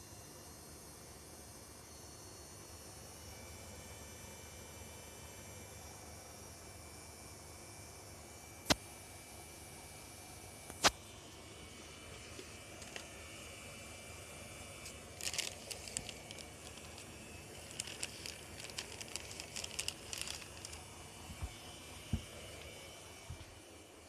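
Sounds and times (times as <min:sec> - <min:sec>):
steady low hum: 0:00.0 - 0:24.0
soap suds crackling and fizzing: 0:15.2 - 0:20.9.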